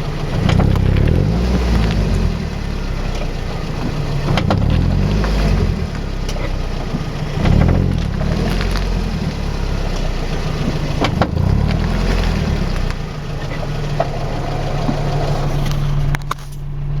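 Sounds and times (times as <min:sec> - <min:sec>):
car engine rumbling: 0:00.0 - 0:17.0
wheel grinding noise: 0:00.0 - 0:17.0.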